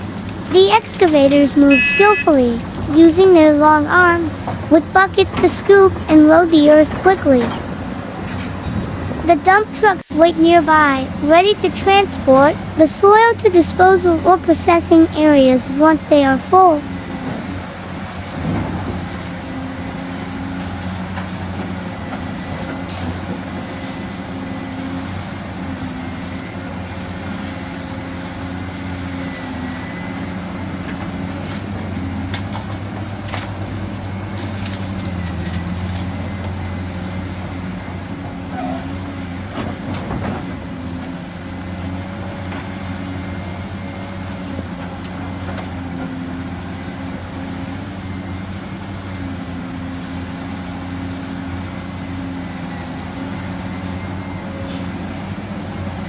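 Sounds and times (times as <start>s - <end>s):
heavy diesel engines running: 0.0s - 56.0s.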